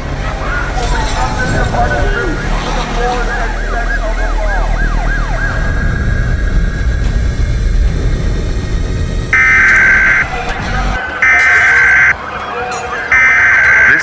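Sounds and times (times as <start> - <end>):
low rumbling street noise: 0.0 - 14.0
emergency siren yelping: 2.8 - 6.5, 9.4 - 12.2, 13.1 - 14.0
harsh alert data burst: 9.4 - 12.2, 13.1 - 14.0.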